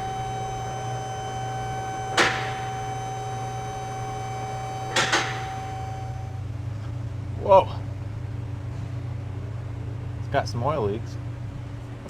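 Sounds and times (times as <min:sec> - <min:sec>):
hydraulic pump motor whining: 0:00.0 - 0:06.9.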